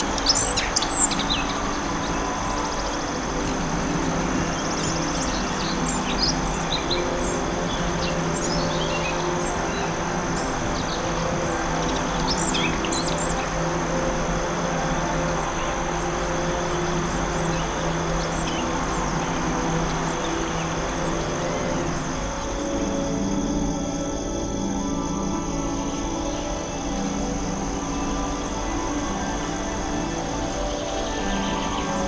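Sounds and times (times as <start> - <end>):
small birds chirping: 0.0 - 22.9
low drone: 0.0 - 32.0
steady rushing background: 0.0 - 32.0.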